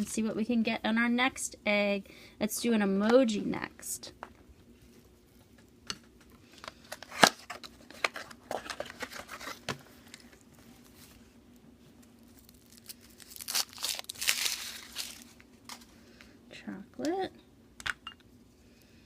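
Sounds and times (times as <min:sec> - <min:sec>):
plastic wrapper tearing and crinkling: 0:12.2 - 0:15.9.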